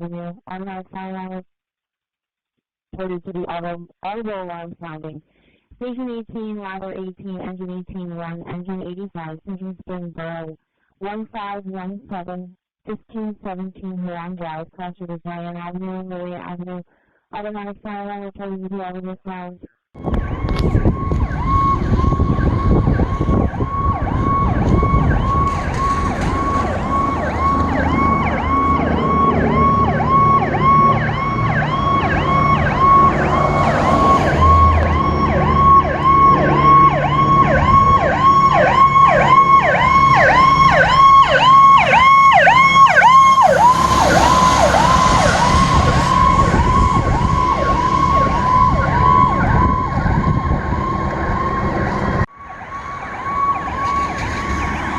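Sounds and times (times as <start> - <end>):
emergency siren yelping: 20.0 - 54.9
vehicle engine rumble: 20.0 - 54.9.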